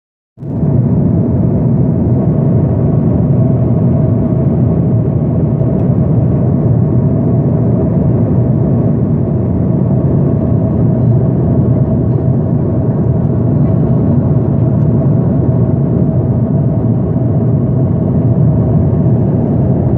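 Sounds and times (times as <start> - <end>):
aircraft cabin engine drone: 0.4 - 19.9.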